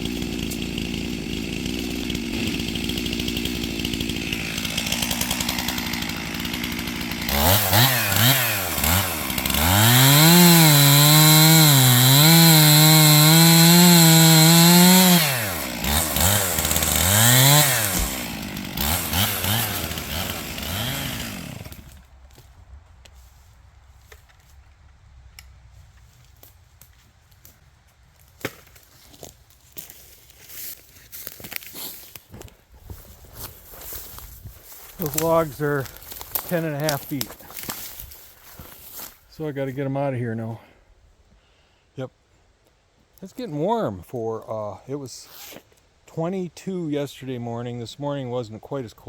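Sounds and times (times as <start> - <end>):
chainsaw revving and idling: 0.0 - 22.1, 32.3 - 40.4.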